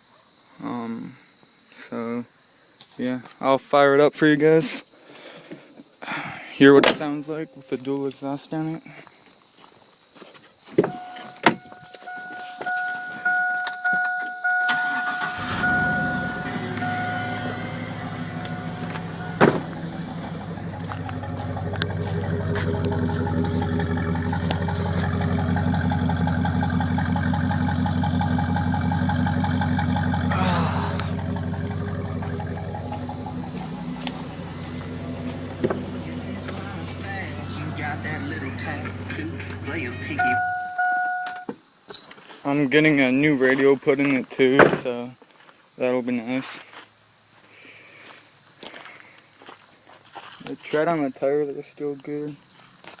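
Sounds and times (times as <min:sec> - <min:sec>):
two-note chime: 0:10.9 - 0:21.0, 0:40.2 - 0:41.5
car engine starting and idling: 0:10.9 - 0:41.0.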